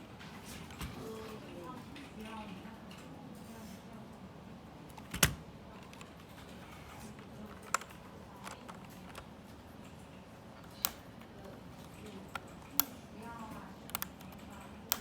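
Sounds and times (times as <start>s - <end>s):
mechanical keyboard key clicks: 4.9s - 6.1s, 10.6s - 11.1s, 11.9s - 13.0s, 13.8s - 15.0s.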